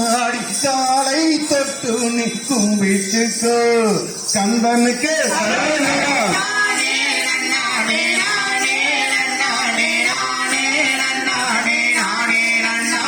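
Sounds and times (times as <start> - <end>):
musical accompaniment: 5.0 - 13.0
person singing: 5.3 - 13.0.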